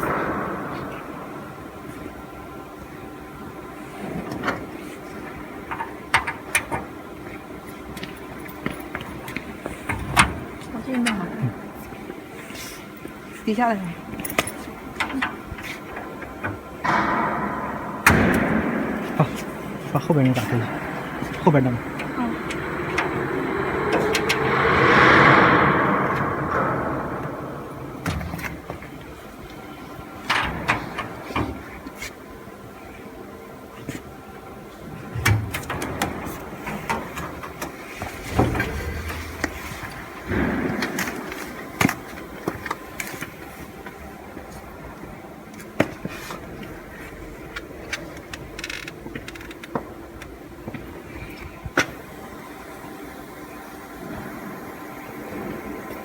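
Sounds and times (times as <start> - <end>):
sharp knocks and clatter: 14.2 - 32.0
cnc router humming: 16.9 - 30.0.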